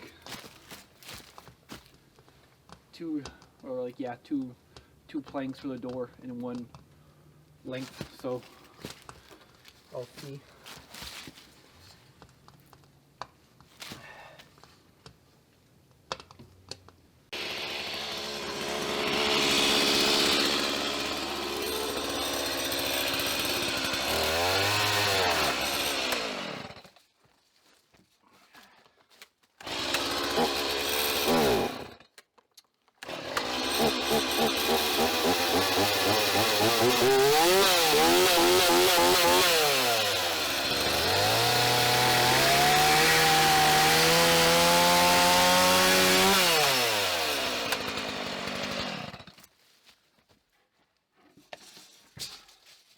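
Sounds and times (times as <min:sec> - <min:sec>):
chainsaw revving cutting wood: 0:17.3 - 0:26.9, 0:29.6 - 0:32.0, 0:33.0 - 0:49.4.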